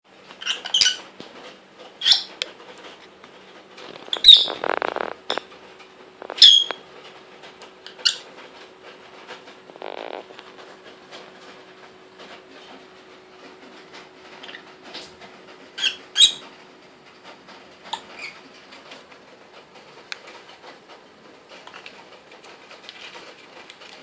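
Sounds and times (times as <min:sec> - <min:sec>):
bird chirping: 0:04.0 - 0:05.4, 0:06.2 - 0:06.8.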